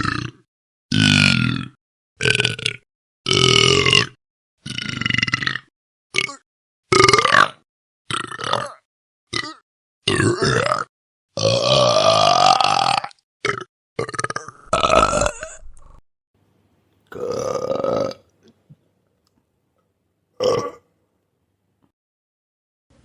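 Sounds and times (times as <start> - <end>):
person burping: 0.0 - 16.0, 17.1 - 18.3, 20.4 - 20.9.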